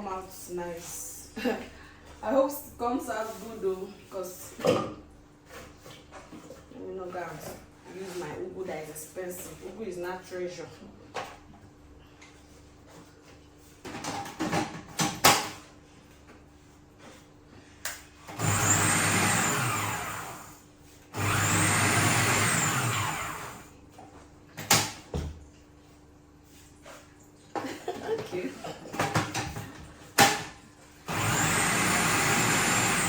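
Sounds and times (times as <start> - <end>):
blender motor whining: 18.3 - 23.7, 31.1 - 33.0.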